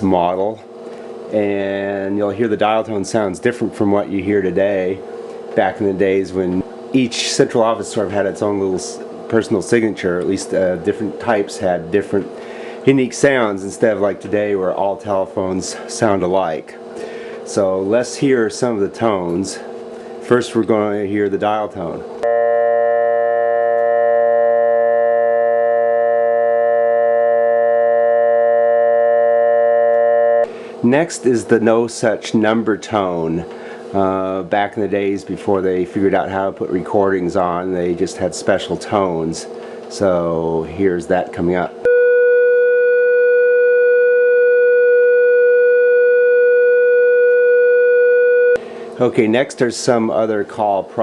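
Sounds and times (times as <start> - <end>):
buzzy telephone dial tone: 22.2 - 30.5, 41.9 - 48.6.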